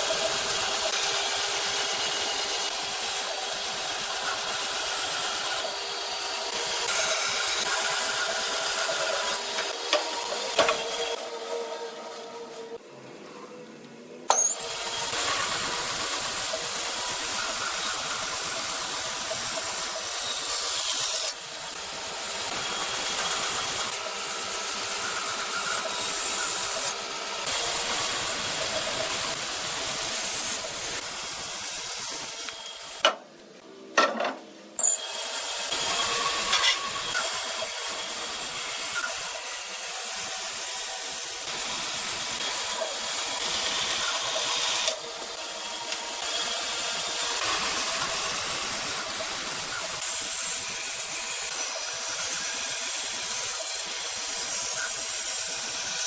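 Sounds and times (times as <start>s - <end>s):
power tool grinding wood: 0.0s - 12.8s, 34.8s - 56.0s.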